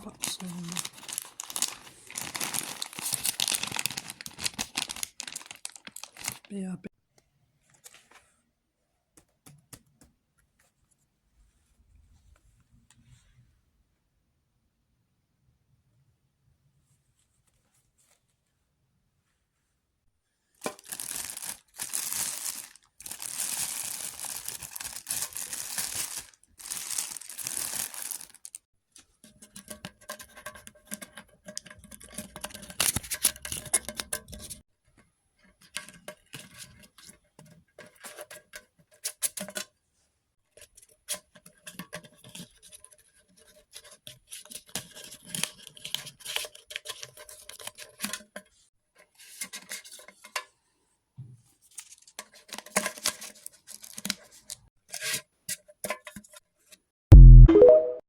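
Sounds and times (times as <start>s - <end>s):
crinkling and rustling of package: 0.0s - 6.7s, 20.5s - 28.7s, 29.4s - 34.6s, 51.6s - 54.7s
packaging being torn open: 0.2s - 6.5s.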